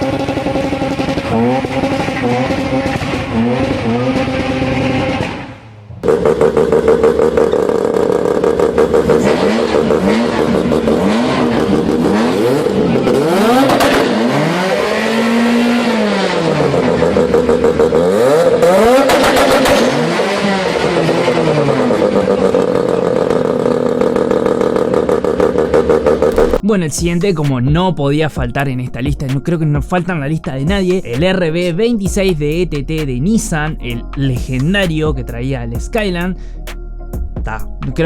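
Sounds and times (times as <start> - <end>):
rotary engine idling and revving: 0.0 - 26.6.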